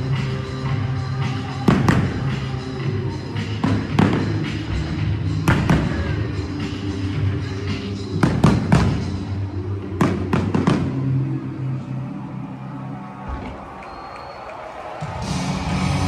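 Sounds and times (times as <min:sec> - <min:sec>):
music: 0:00.0 - 0:16.0
fireworks bangs: 0:01.2 - 0:04.9, 0:05.5 - 0:06.3, 0:08.2 - 0:09.3, 0:10.0 - 0:11.1.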